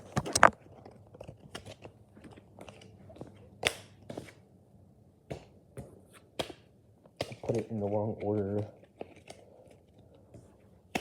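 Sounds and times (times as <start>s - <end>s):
cards snapping against cards: 3.6s - 4.4s, 6.2s - 7.6s.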